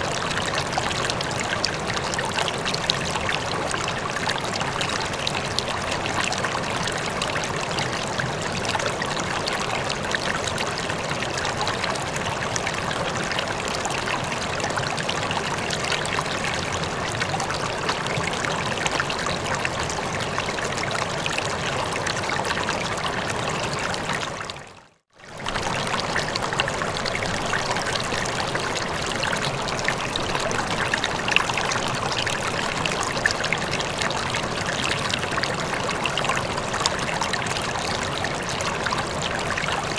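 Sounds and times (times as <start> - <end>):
river water rushing: 25.4 - 39.9.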